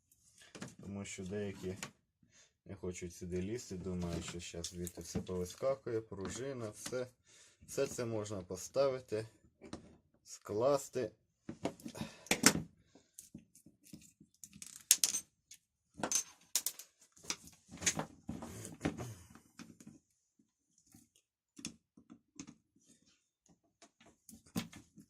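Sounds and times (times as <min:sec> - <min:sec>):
tools clicking and clattering: 0:13.2 - 0:18.0.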